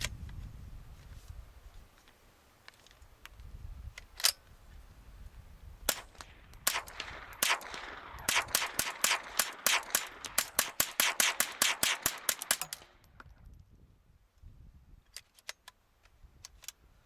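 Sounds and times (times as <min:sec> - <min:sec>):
suppressed rifle shots: 0:05.9 - 0:13.0.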